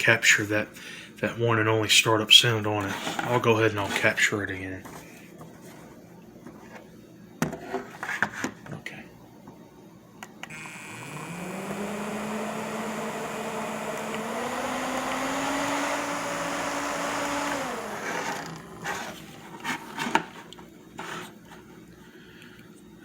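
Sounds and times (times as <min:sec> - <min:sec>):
table fan motor humming: 0:10.4 - 0:19.6.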